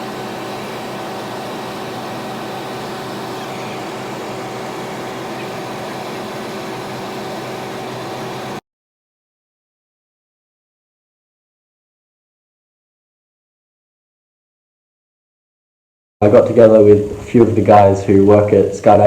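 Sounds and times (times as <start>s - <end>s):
steady mechanical drone: 0.0s - 8.6s.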